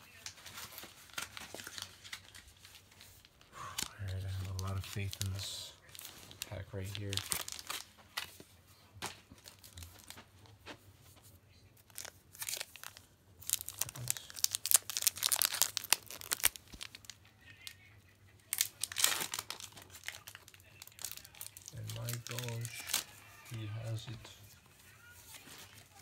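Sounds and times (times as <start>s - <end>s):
foil pack tearing and crinkling: 3.8s - 8.3s, 11.9s - 17.2s, 18.5s - 24.1s.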